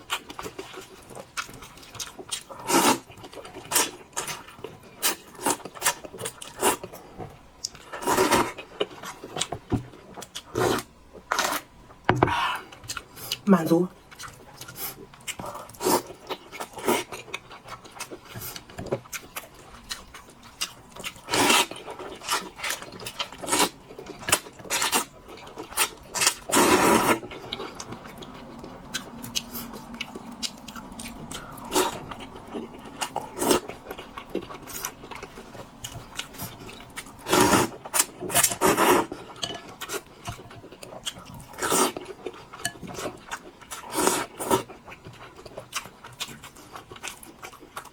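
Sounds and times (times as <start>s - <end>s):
crunchy chewing: 14.1s - 47.9s.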